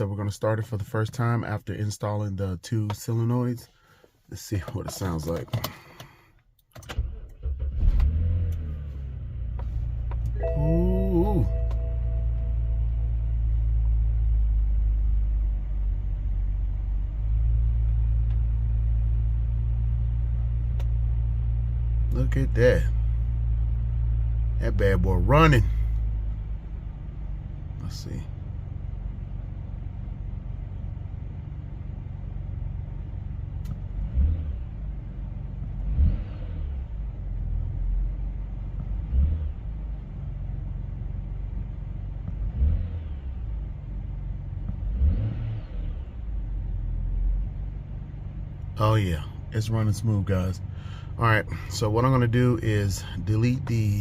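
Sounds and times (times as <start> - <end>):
car engine idling: 8.9 - 36.0, 46.0 - 54.0.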